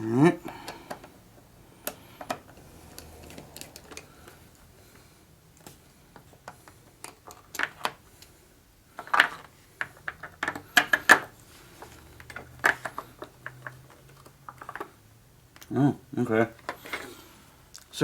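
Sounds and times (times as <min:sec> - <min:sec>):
hand tools tapping metal parts: 0:00.0 - 0:04.7, 0:09.0 - 0:17.8.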